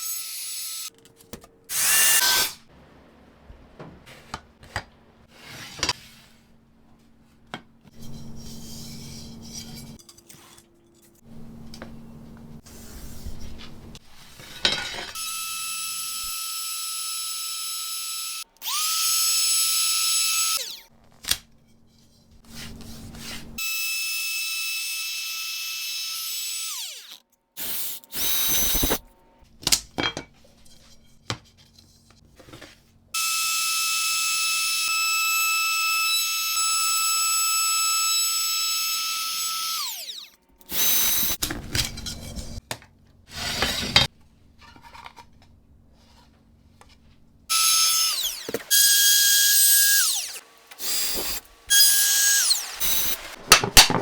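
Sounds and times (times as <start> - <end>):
cutting or drilling bursts: 1.7 - 2.6, 15.2 - 20.8, 23.6 - 29.0, 33.2 - 41.4, 47.5 - 53.4
electric power tool whining: 33.2 - 41.4, 47.5 - 53.4.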